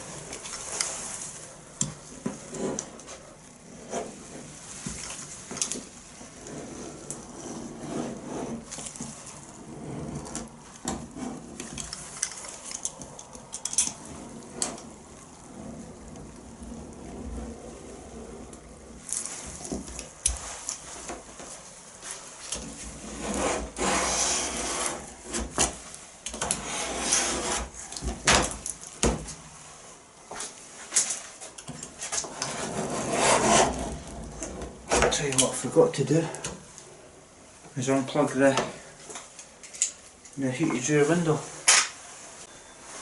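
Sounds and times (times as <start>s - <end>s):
blade scraping rubber seal: 22.5s - 27.8s, 32.2s - 35.6s.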